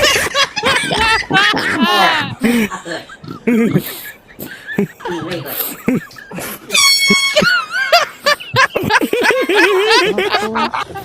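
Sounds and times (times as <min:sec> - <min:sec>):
people talking: 0:00.0 - 0:11.0
high-pitched cries: 0:06.6 - 0:08.1.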